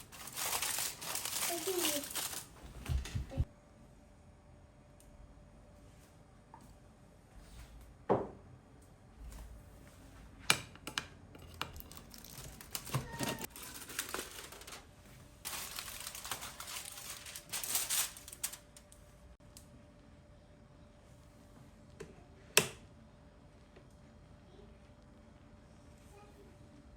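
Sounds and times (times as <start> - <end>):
crinkly rustling: 0.0 - 3.5, 11.7 - 19.3.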